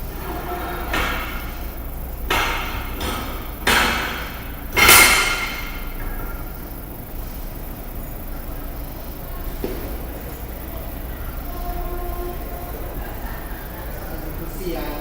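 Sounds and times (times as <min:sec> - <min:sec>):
metal clanks ringing: 0:00.2 - 0:06.2.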